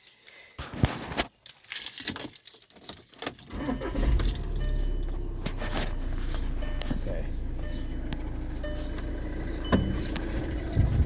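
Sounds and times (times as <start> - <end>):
keys jangling in ignition: 1.4 - 7.2
diesel engine starting and idling: 3.5 - 11.0.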